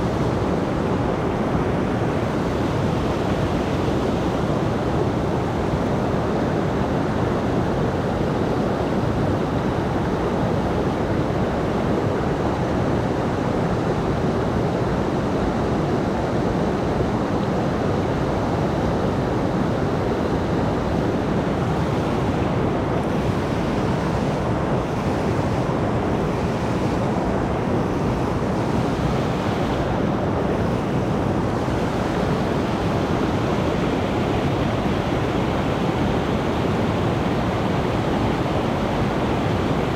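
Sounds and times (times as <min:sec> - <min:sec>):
mountain stream rushing: 0:19.6 - 0:39.9.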